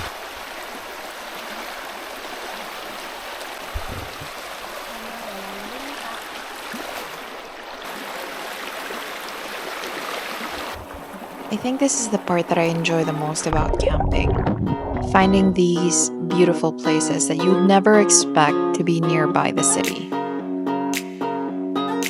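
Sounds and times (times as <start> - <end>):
river rushing: 0.0 - 13.6
soft thump: 3.7 - 4.3.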